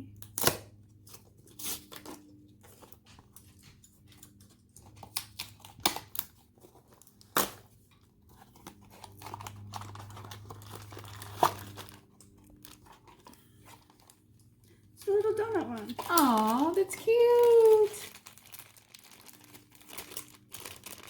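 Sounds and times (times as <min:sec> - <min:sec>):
packaging rustling: 0:04.3 - 0:21.0
plastic packaging crinkling: 0:04.3 - 0:21.0.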